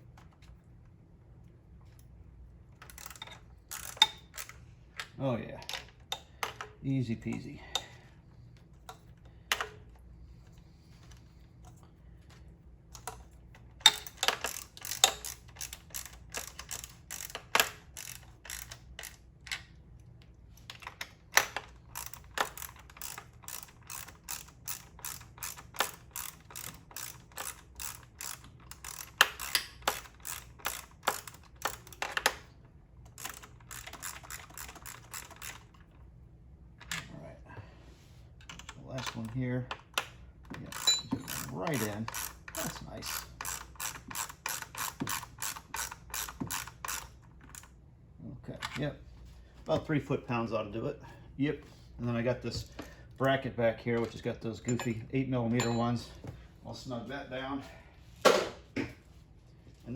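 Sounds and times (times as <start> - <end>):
hand ratchet clicking: 2.8 - 8.0, 12.9 - 19.6, 20.7 - 32.4, 33.1 - 35.8, 39.9 - 47.7.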